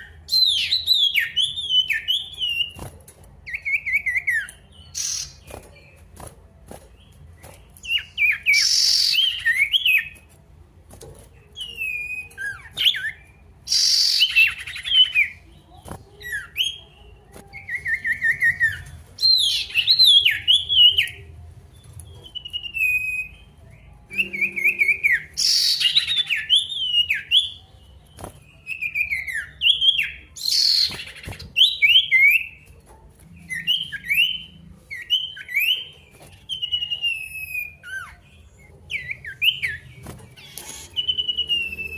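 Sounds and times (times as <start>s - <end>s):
bird singing trilled whistles: 7.8s - 10.2s, 24.1s - 27.6s, 33.5s - 41.9s.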